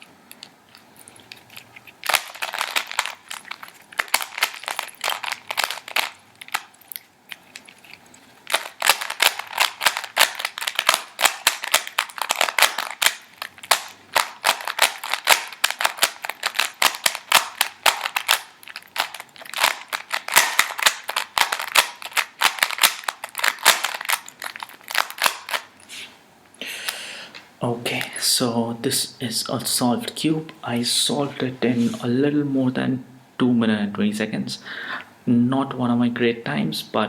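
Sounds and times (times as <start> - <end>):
puzzle cube plastic clicks: 0.3 - 25.7.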